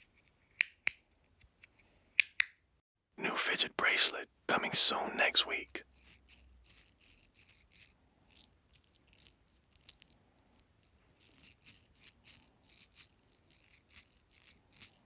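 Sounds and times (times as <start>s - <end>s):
fidget toy clicking and rattling: 5.9s - 15.0s.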